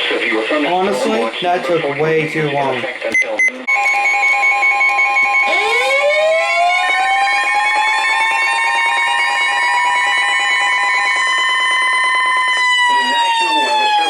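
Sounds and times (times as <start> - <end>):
pulsing beep: 3.1 - 6.1
siren wailing: 3.7 - 14.0.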